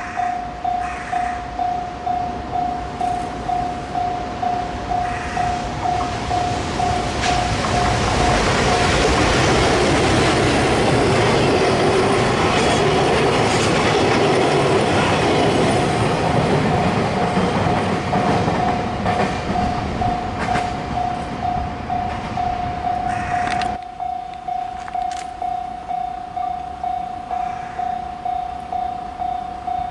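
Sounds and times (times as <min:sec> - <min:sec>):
crossing warning bell: 0:00.0 - 0:29.9
train rolling past: 0:00.0 - 0:29.9
wheel clacks over rail joints: 0:05.6 - 0:22.5.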